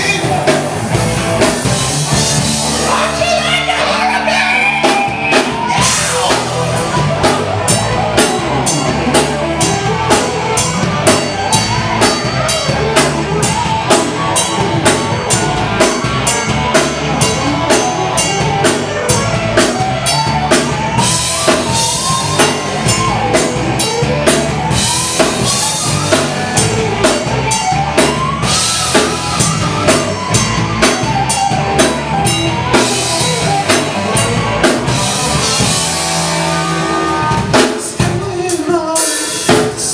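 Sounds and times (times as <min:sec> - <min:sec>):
bass line: 0:00.0 - 0:38.6
bending lead guitar melody: 0:00.0 - 0:39.9
drum kit beat: 0:00.0 - 0:39.9.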